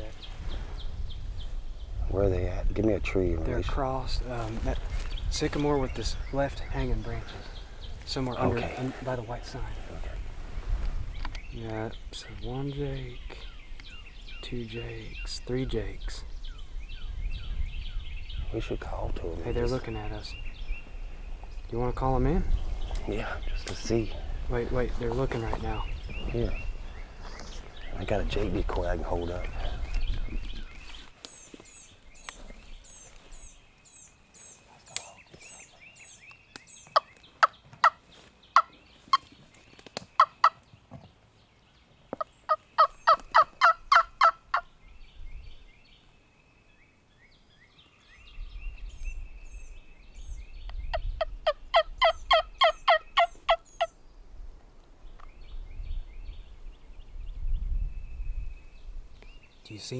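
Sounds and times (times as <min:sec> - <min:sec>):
faint songbird chirps: 0:00.0 - 0:59.9
turkey call yelps: 0:42.5 - 0:44.6, 0:51.4 - 0:53.9.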